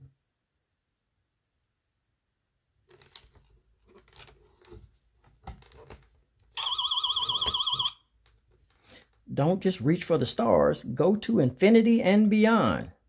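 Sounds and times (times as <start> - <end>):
paper page rustling: 2.8 - 6.2.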